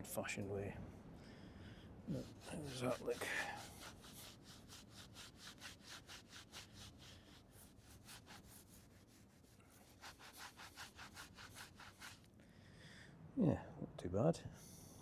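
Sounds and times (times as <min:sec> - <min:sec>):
cloth rubbing on metal: 0:02.1 - 0:12.3.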